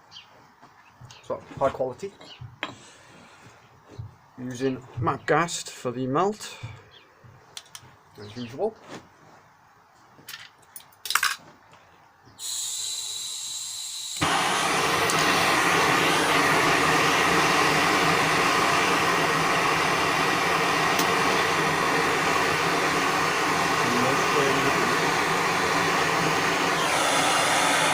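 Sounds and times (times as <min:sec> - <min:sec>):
gas hissing from nozzle: 0:12.4 - 0:27.9
torch flame roaring: 0:12.4 - 0:27.9
torch igniter clicks: 0:14.1 - 0:27.9.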